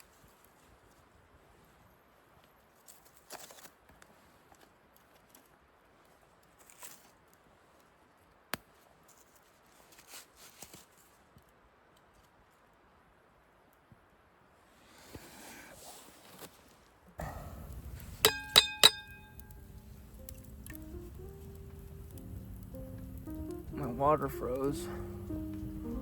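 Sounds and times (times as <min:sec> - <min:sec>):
faint handling rustles and scrapes: 0:00.0 - 0:12.6, 0:14.6 - 0:17.1.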